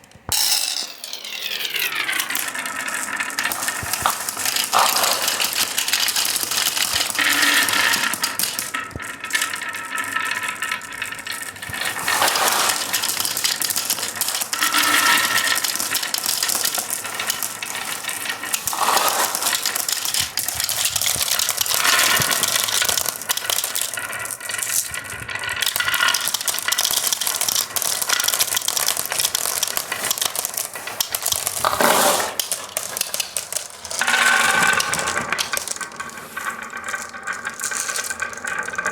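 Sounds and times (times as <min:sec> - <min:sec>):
marbles clattering down wooden track: 0:00.0 - 0:38.9.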